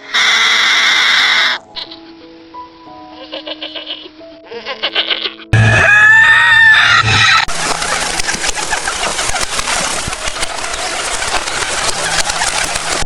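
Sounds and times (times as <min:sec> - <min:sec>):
chickens clucking and scratching: 0:04.9 - 0:13.0
rooster crowing: 0:05.5 - 0:07.6.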